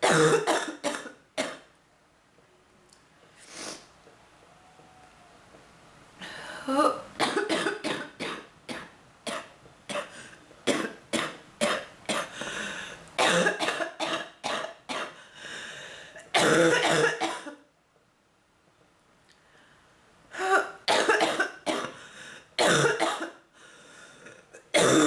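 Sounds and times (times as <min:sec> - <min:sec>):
woman coughing harshly: 0:00.0 - 0:01.7, 0:06.7 - 0:12.4, 0:13.2 - 0:15.2, 0:16.4 - 0:17.6, 0:20.4 - 0:22.0, 0:22.6 - 0:23.4, 0:24.3 - 0:25.0.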